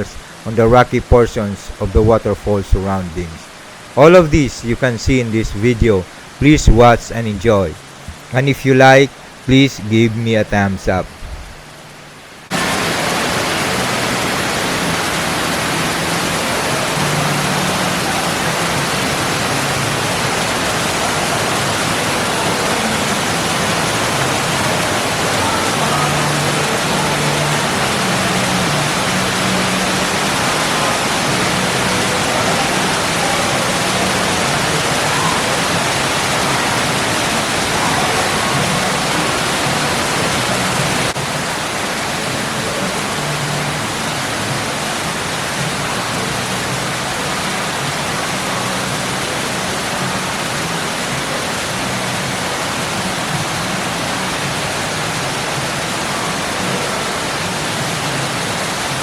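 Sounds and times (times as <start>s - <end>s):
waterfall rushing into pool: 0.0s - 59.0s.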